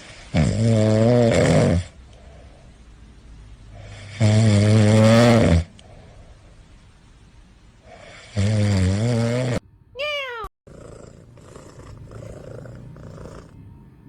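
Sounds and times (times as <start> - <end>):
cat snoring: 0.0 - 2.7, 3.7 - 6.5, 7.8 - 9.6, 10.7 - 14.0.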